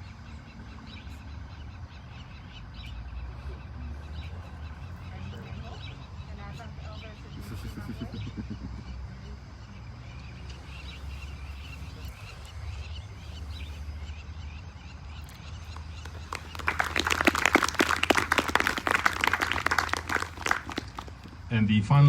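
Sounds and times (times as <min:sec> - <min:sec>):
birds chirping faintly: 0:00.0 - 0:22.0
audience applause: 0:15.7 - 0:21.4.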